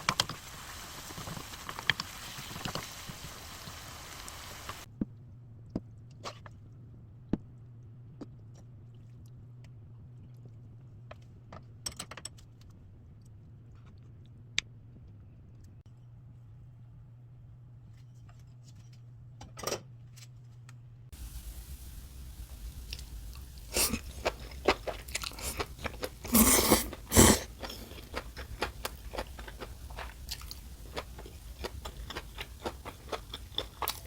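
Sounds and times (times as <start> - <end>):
steady low hum: 21.2 - 34.0.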